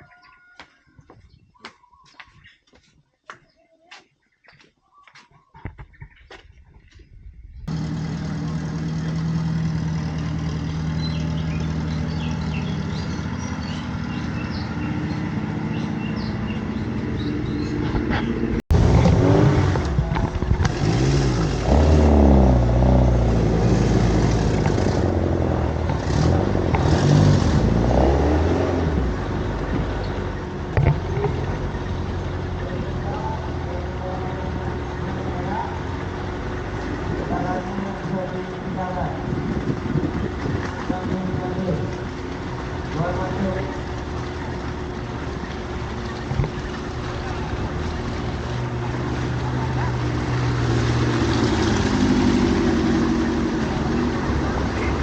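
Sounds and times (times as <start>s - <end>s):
vehicle engine running: 7.6s - 55.0s
engines revving: 7.7s - 55.0s
voices: 29.2s - 55.0s.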